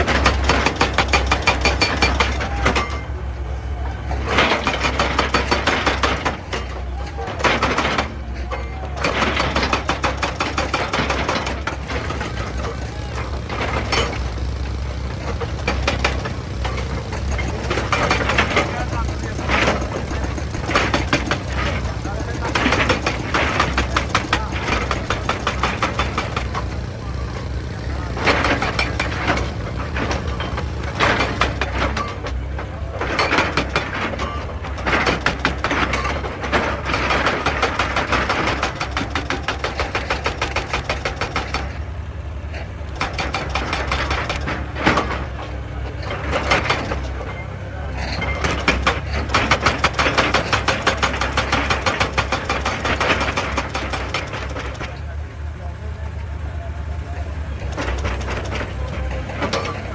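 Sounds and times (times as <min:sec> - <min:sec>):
excavator engine running: 0:00.0 - 0:59.9
rapid knocking against rock: 0:17.0 - 0:26.8, 0:48.4 - 0:54.9.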